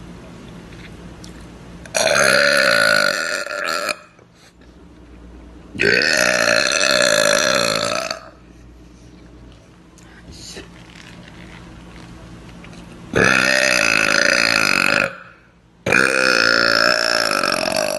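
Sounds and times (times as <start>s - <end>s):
woman burping: 5.8s - 8.3s, 15.9s - 17.9s.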